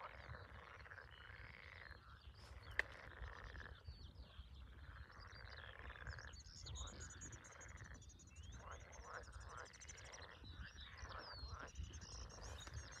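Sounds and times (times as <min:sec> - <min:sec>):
birds chirping and trilling: 0:00.0 - 0:13.0
frogs croaking: 0:00.0 - 0:13.0.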